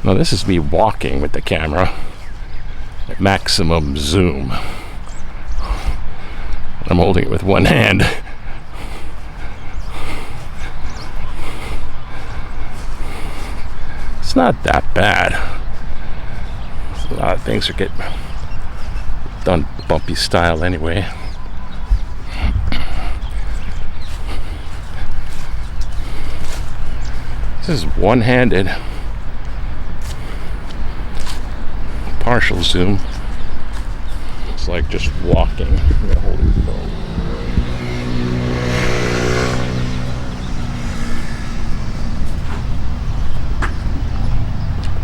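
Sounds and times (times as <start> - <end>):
wind on microphone: 21.2 - 24.6, 33.0 - 45.0
microphone handling rumble: 21.6 - 24.1, 34.0 - 45.0
car driving past: 36.2 - 45.0.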